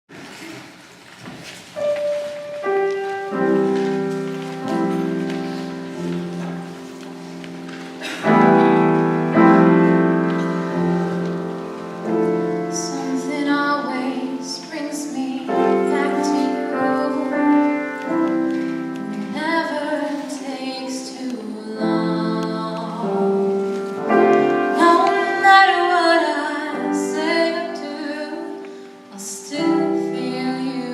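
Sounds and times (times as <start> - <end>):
piano playing chords: 1.8 - 30.9
woman singing: 12.7 - 17.9, 19.1 - 23.6, 24.5 - 30.9.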